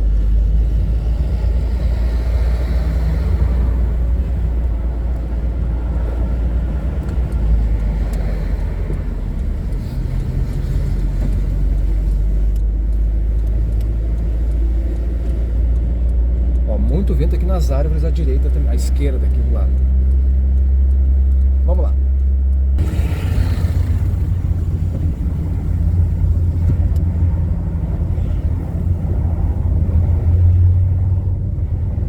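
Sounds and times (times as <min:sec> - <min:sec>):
highway traffic passing: 0:00.0 - 0:32.0
wind buffeting microphone: 0:22.8 - 0:32.0.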